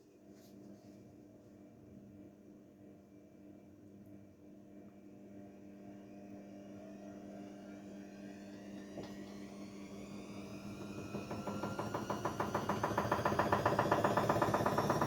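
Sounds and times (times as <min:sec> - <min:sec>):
washing machine motor humming and whining: 0:04.6 - 0:15.0.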